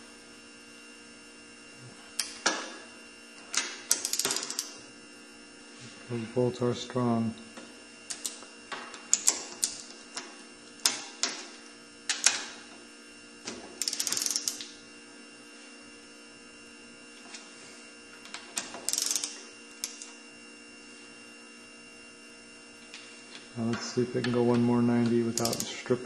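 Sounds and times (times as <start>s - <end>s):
steady electrical hum: 0.0s - 26.0s
ratchet wrench clicking: 3.9s - 4.7s, 13.8s - 14.7s, 18.9s - 20.1s, 25.4s - 25.7s.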